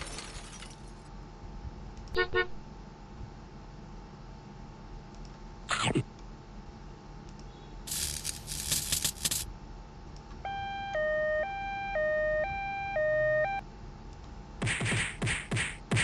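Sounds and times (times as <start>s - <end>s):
rough hissing noise: 7.9s - 9.5s
two-tone hi-lo siren: 10.5s - 13.6s.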